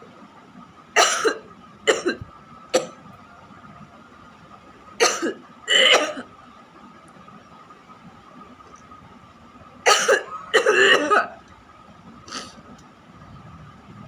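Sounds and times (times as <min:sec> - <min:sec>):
person coughing: 0:01.0 - 0:02.2, 0:05.0 - 0:06.3, 0:09.9 - 0:11.4.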